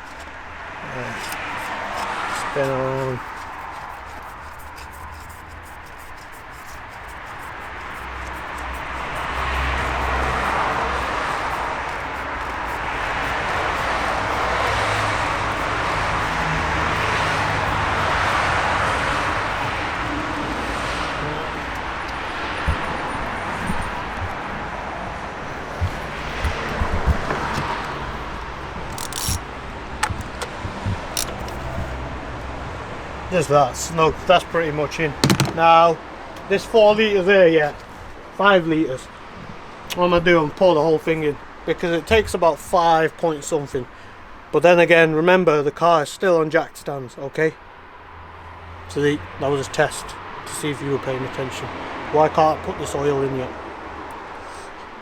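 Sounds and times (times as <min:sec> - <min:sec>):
traffic noise: 0:00.0 - 0:55.0
wind: 0:00.0 - 0:55.0
plastic cap threading clicks: 0:30.0 - 0:32.0, 0:35.2 - 0:35.6.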